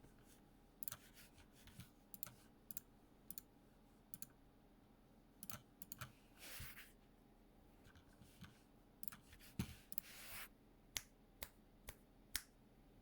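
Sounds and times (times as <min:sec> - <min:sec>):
clicky keyboard typing: 0:04.1 - 0:04.3, 0:05.4 - 0:06.1, 0:09.0 - 0:09.3.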